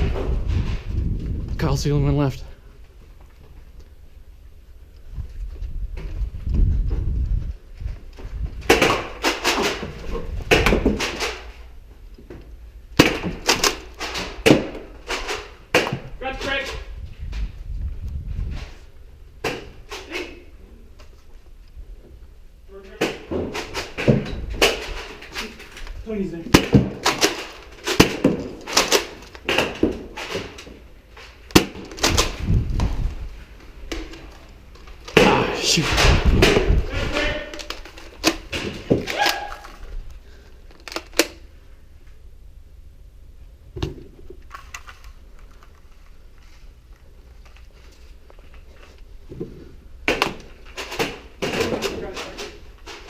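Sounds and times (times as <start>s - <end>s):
knocks and thuds indoors: 0.0s - 1.6s, 5.9s - 11.6s, 22.9s - 25.6s, 26.4s - 30.9s
sharp crack: 13.0s - 16.8s, 22.9s - 30.7s, 33.8s - 40.2s
heavy thumps: 35.0s - 37.7s
toy blasters clacking and snapping: 40.7s - 41.4s.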